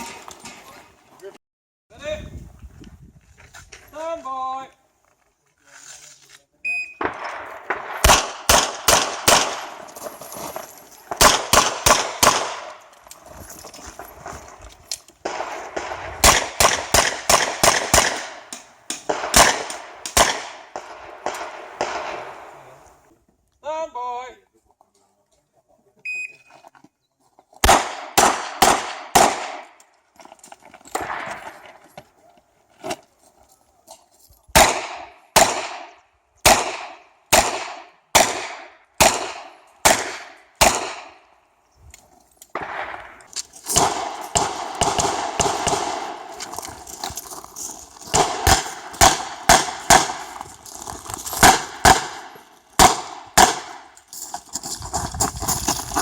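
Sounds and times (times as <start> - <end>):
revolver gunshots: 7.0 - 9.8, 11.1 - 12.8, 15.2 - 22.7, 27.6 - 29.7, 34.6 - 41.2, 42.6 - 46.3, 48.1 - 50.3, 51.4 - 53.9.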